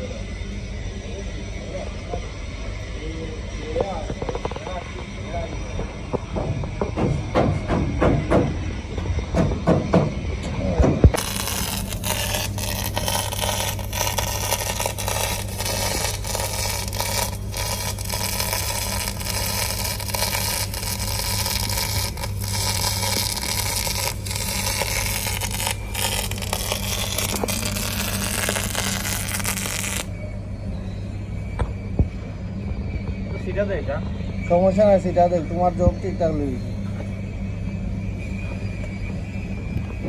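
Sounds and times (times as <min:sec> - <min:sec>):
steady low hum: 0:10.2 - 0:40.0
welding arc crackling: 0:11.2 - 0:30.1.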